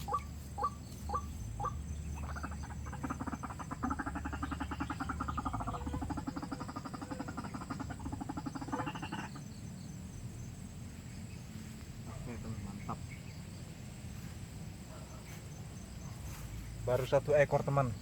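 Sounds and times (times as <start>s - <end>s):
bird croaking call: 0.0s - 9.6s
insect chirps: 0.0s - 18.0s
insects droning: 0.0s - 18.0s.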